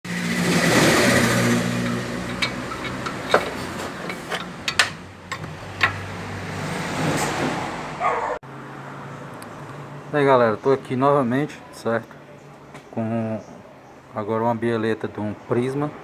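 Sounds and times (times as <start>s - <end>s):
car engine humming: 0.0s - 8.4s
suspension knocks: 0.5s - 6.2s.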